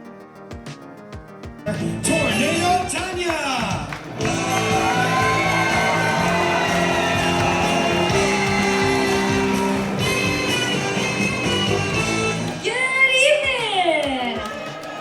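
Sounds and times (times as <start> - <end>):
person singing: 4.2 - 12.9.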